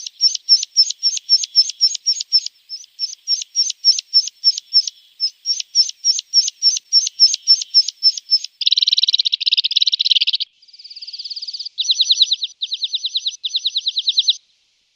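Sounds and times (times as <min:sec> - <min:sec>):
lark singing: 0:00.0 - 0:14.4.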